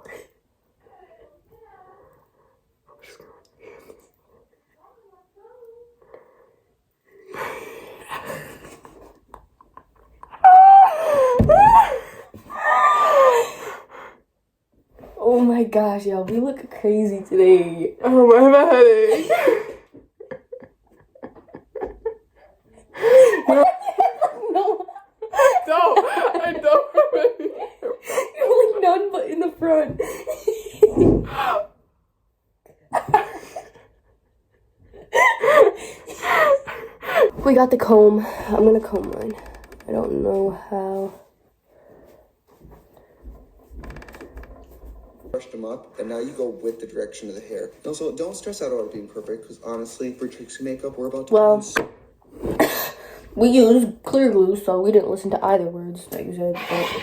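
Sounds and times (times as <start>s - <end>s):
breathy wheeze: 10.5s - 14.3s.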